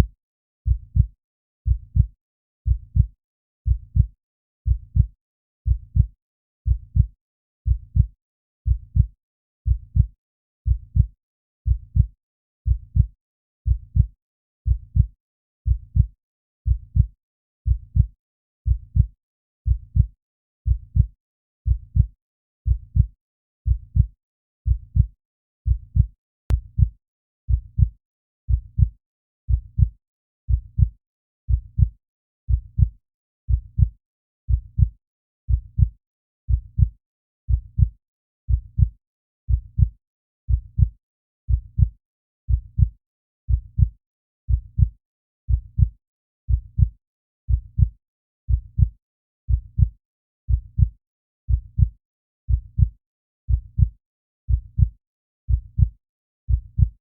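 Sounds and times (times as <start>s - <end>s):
heartbeat lub-dub: 25.9s - 27.0s, 39.5s - 39.9s, 54.5s - 54.9s, 55.5s - 55.9s, 56.5s - 56.9s.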